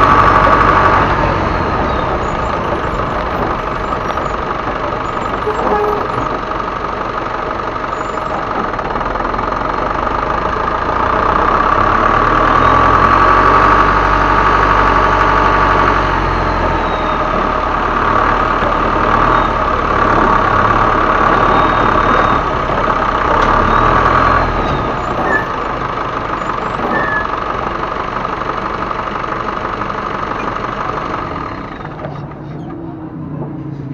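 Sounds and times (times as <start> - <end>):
diesel truck engine revving: 0.0 - 33.9
turbo whistling: 1.8 - 6.4, 23.5 - 27.4.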